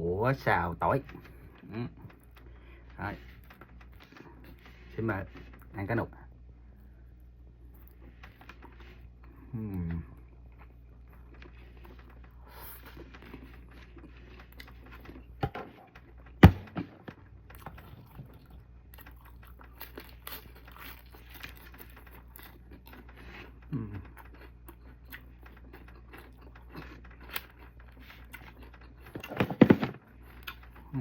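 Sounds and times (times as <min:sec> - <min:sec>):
chewing: 0:07.6 - 0:16.3, 0:17.5 - 0:29.4, 0:30.1 - 0:31.0
sharp knock: 0:16.4 - 0:17.0.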